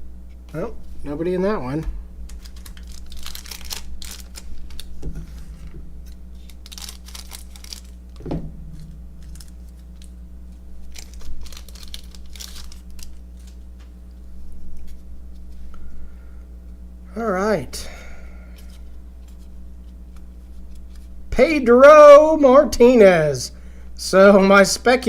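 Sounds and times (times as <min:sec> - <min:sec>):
steady low hum: 0:00.0 - 0:25.0
pack wrapper crinkling: 0:02.2 - 0:08.3, 0:09.2 - 0:13.9
cards clicking and rustling: 0:02.3 - 0:08.2, 0:10.9 - 0:13.9.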